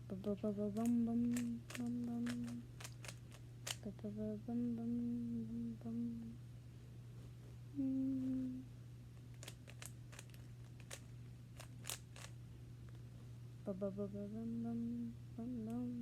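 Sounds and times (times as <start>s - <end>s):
person humming: 0.0s - 2.6s, 3.8s - 6.4s, 7.7s - 8.7s, 13.7s - 16.0s
steady low hum: 0.0s - 16.0s
sharp clicks: 0.8s - 3.8s.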